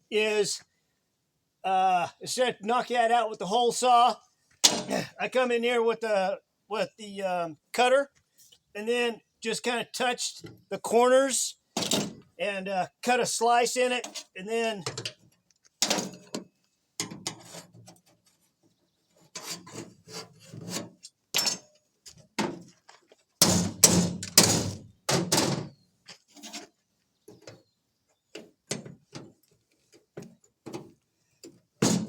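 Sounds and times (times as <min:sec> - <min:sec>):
hand tools scraping sheet metal: 0:17.2 - 0:18.0, 0:19.3 - 0:21.6.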